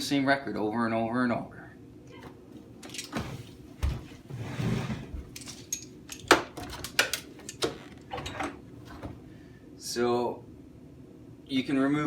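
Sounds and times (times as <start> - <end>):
cabinet parts clicking and knocking: 5.0 - 9.2.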